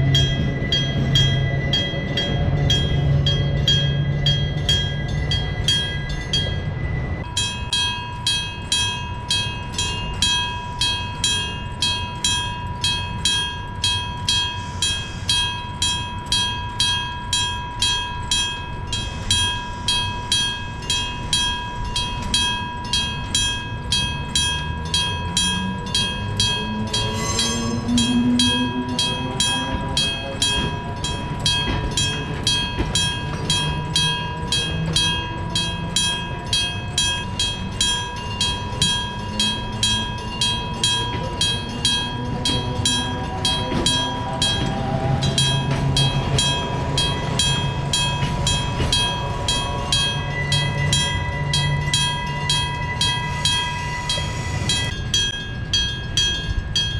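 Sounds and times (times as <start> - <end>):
level crossing bell ringing: 0.0 - 56.9
train motor whine: 20.8 - 56.9.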